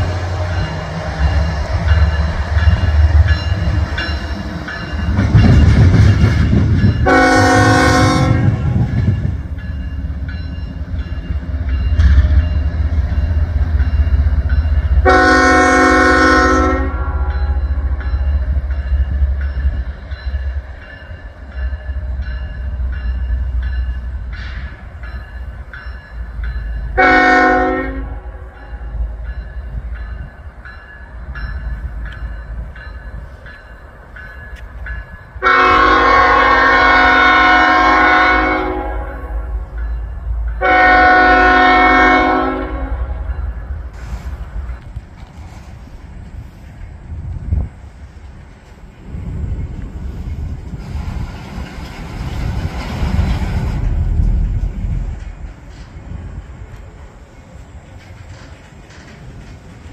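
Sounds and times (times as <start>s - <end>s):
low rumble of moving train: 0.0s - 59.9s
locomotive air horn blasts: 7.0s - 8.9s, 15.0s - 17.6s, 27.0s - 28.4s, 35.4s - 39.6s, 40.6s - 43.3s.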